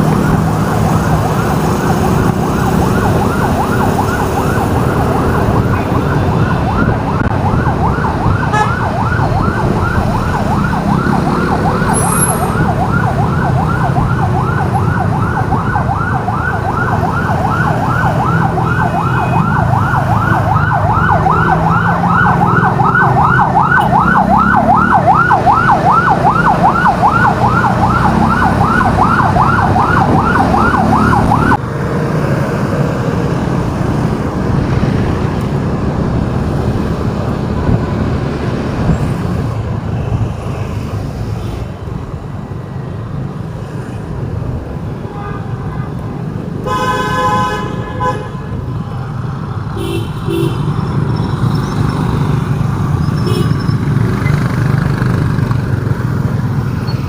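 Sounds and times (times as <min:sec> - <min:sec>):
siren yelping: 0:00.0 - 0:31.6
road traffic rumble: 0:00.0 - 0:57.0.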